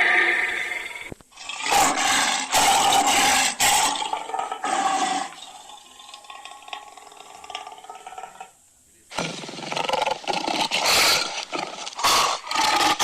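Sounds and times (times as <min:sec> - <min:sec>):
dragon roar: 0:01.5 - 0:04.1.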